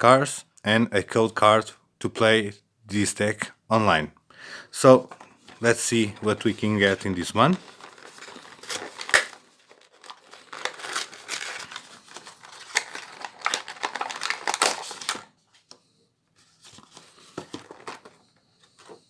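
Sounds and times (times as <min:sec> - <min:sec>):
packaging tearing and crinkling: 0:06.2 - 0:15.3.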